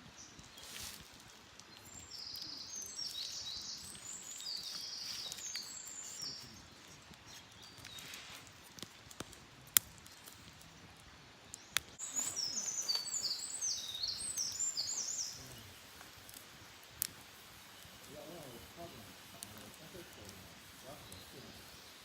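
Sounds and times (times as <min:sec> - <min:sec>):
campfire wood popping: 0:00.0 - 0:22.0
songbird singing high notes: 0:12.0 - 0:15.7.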